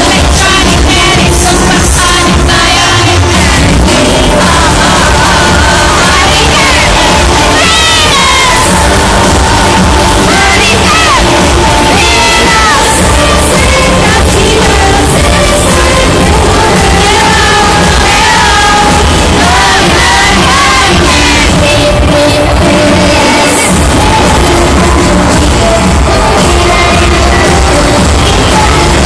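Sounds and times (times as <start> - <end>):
audience shouting and cheering: 0.0 - 29.0
live pop song with heavy beat: 0.0 - 29.0
woman singing: 0.0 - 29.0.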